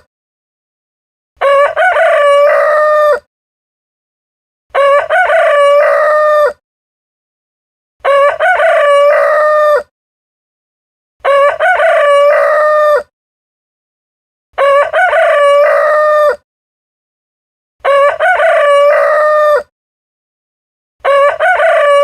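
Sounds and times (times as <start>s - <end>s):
rooster crowing: 1.4s - 3.3s, 4.7s - 6.6s, 8.0s - 9.9s, 11.2s - 13.1s, 14.6s - 16.4s, 17.8s - 19.7s, 21.0s - 22.0s.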